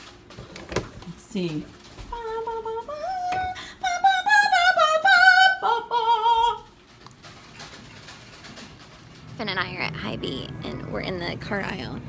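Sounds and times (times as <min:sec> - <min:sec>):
high voice singing wordless melody: 0:02.1 - 0:06.7.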